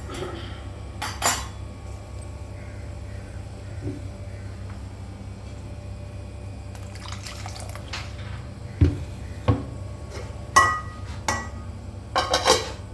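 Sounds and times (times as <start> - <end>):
steady low hum: 0.0 - 12.9
metal utensils clinking: 12.2 - 12.8.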